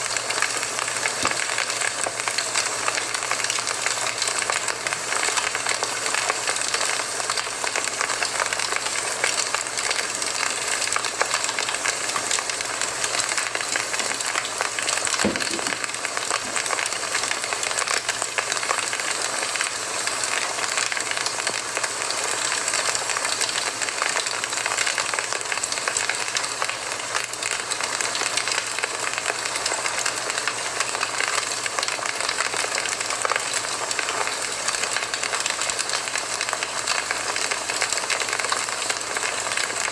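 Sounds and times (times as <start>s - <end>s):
campfire crackling and hissing: 0.0s - 39.9s
loud fire pop: 13.4s - 17.8s.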